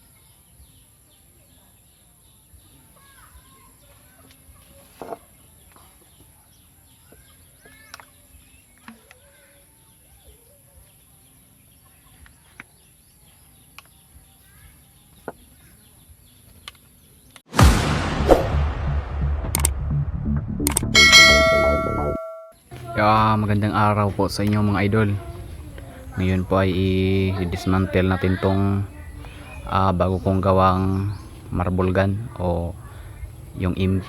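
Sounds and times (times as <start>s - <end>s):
loud ringing: 17.6s - 22.5s
sharp clicks: 19.5s - 19.8s, 20.6s - 20.9s
chickens calling: 22.8s - 34.0s.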